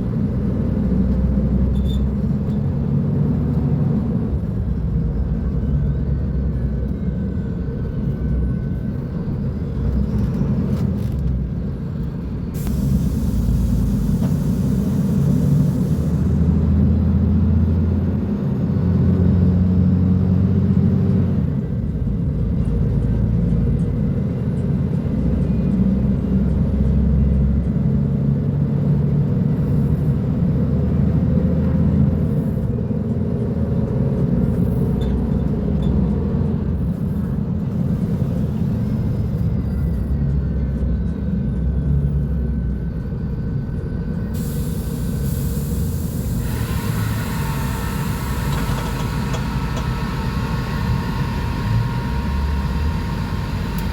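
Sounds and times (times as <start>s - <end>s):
bus diesel engine rumbling: 0.0s - 53.9s.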